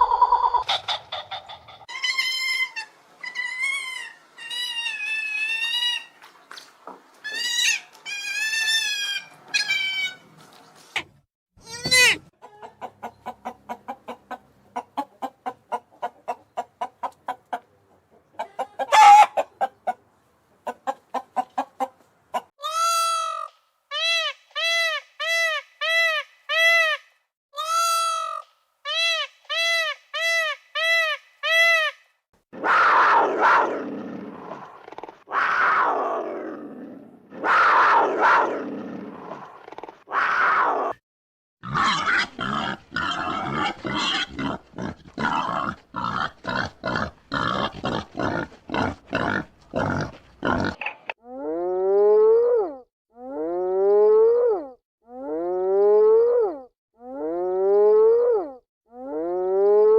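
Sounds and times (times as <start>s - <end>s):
chickens clucking and calling: 0.0s - 2.0s, 12.3s - 22.5s.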